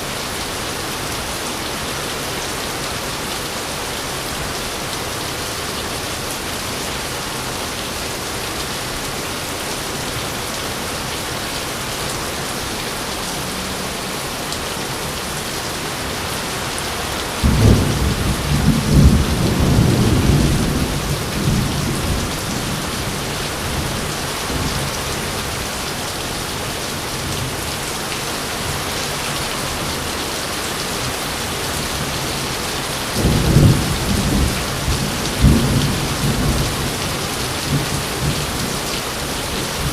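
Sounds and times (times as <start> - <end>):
heavy rain hissing: 0.0 - 39.9
thunder crack and rumble: 17.4 - 23.0, 33.2 - 37.1.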